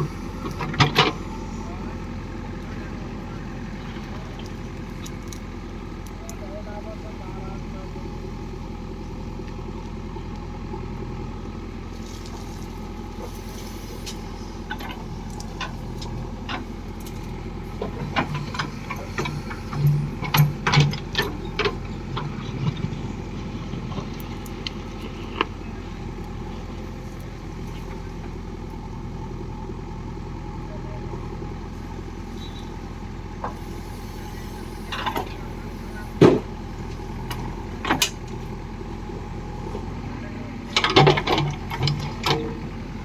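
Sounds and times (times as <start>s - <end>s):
diesel engine running: 0.0s - 43.0s.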